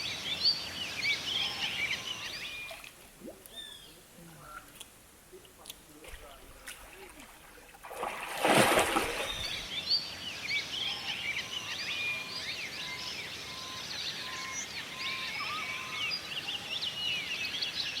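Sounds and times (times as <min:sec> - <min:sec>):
background hiss: 0:00.0 - 0:12.0
birds chirping and whistling: 0:09.0 - 0:10.0.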